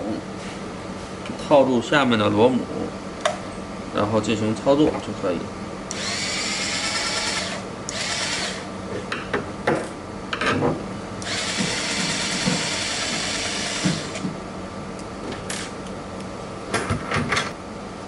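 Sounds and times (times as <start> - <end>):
electric screwdriver running: 5.9 - 8.7, 11.2 - 14.2.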